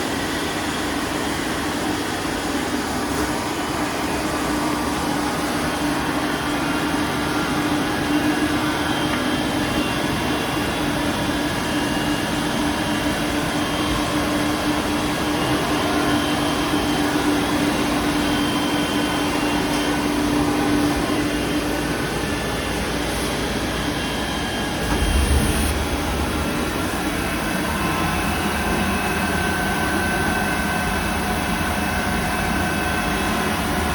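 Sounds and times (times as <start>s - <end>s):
machine hum: 24.3s - 33.9s
low rumble: 24.9s - 28.0s.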